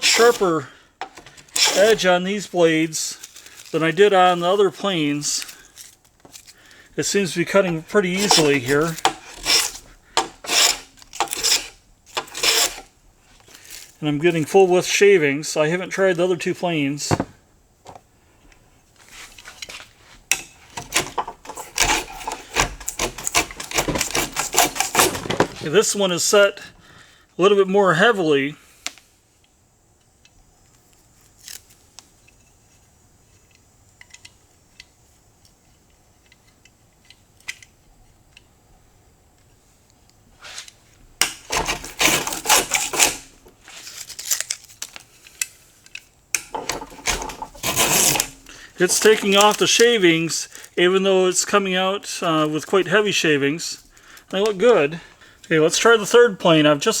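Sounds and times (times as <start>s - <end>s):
light scraping: 0.0s - 0.7s, 1.5s - 14.9s, 46.5s - 50.9s
block plane scraping wood: 7.5s - 12.9s, 20.8s - 25.8s, 41.4s - 43.3s, 46.5s - 49.8s.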